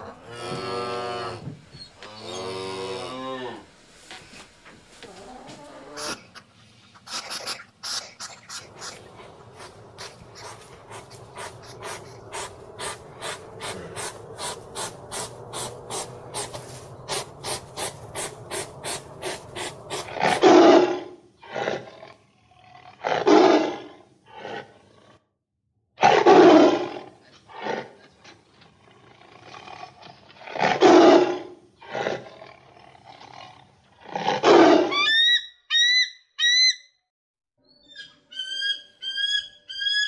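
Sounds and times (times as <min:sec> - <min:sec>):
large animal growling: 0:08.7 - 0:16.5.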